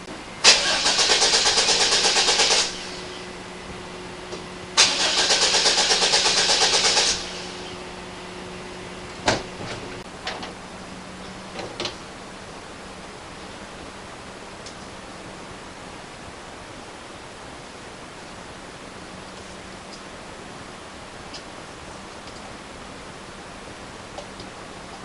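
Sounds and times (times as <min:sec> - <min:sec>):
engine starter cranking: 0:00.4 - 0:03.2, 0:04.8 - 0:07.8.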